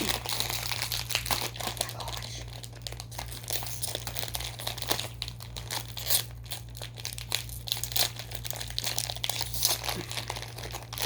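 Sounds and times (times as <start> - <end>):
candy wrapper crinkling: 0.0 - 11.0.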